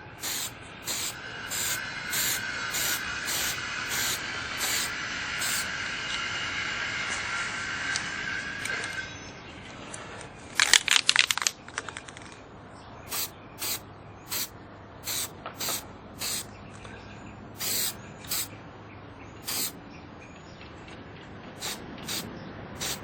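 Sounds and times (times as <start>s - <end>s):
aerosol spray hissing bursts: 0.0s - 5.7s, 13.1s - 16.5s, 17.6s - 18.5s, 19.4s - 19.7s, 21.6s - 23.0s.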